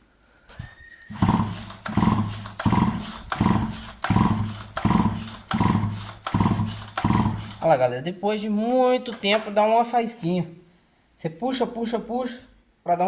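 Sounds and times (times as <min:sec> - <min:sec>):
chainsaw recoil starter pulls: 0:01.1 - 0:07.7
engine cranking without firing: 0:01.1 - 0:07.8.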